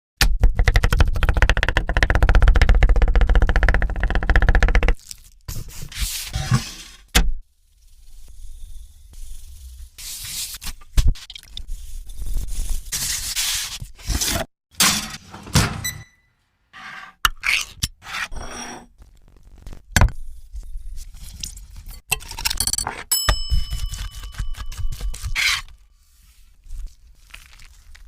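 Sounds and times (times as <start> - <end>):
utensils scraping and rubbing: 16.8 - 19.0, 24.2 - 26.5.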